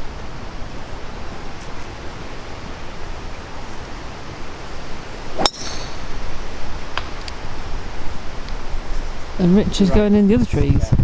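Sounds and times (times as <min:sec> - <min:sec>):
golf club striking ball: 0:00.0 - 0:07.4.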